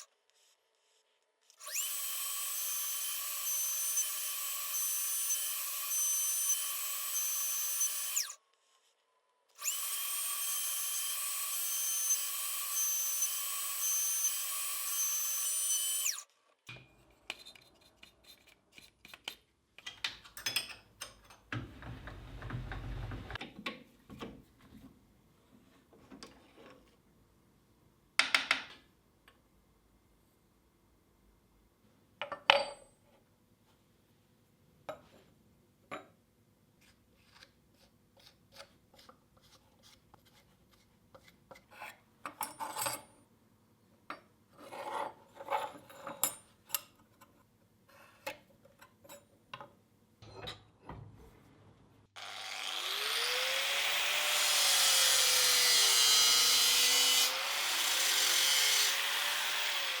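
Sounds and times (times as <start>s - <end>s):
power tool grinding: 1.6s - 8.4s, 9.6s - 16.3s, 52.2s - 60.0s
hand tools scraping metal: 16.9s - 19.4s.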